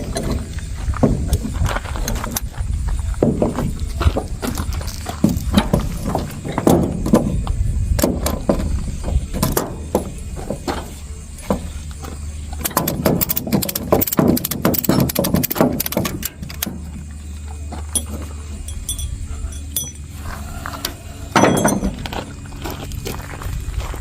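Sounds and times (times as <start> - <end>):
steady low hum: 0.0 - 24.0
metallic clicks and clanks: 12.5 - 17.0, 17.9 - 20.1, 20.8 - 22.2.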